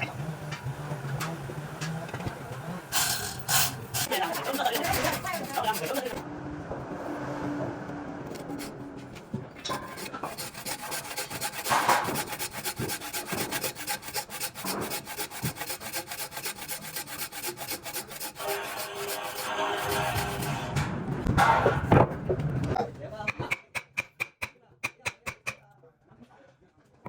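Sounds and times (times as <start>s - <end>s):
wood rasping by hand: 3.0s - 6.2s, 8.3s - 8.8s, 9.7s - 20.7s.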